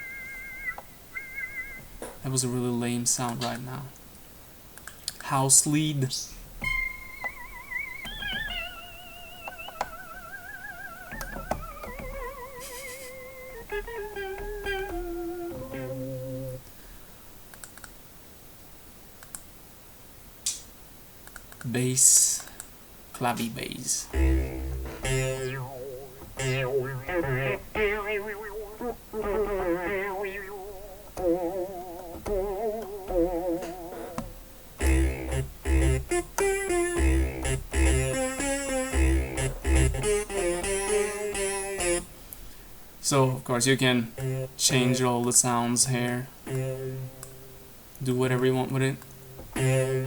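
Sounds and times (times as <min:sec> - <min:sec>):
synthesizer lead notes: 0:06.6 - 0:16.6, 0:24.1 - 0:42.1, 0:44.1 - 0:45.1, 0:46.5 - 0:47.6, 0:49.5 - 0:50.0
faint clicks: 0:17.5 - 0:18.0, 0:19.2 - 0:19.5, 0:20.4 - 0:21.7, 0:22.4 - 0:23.5.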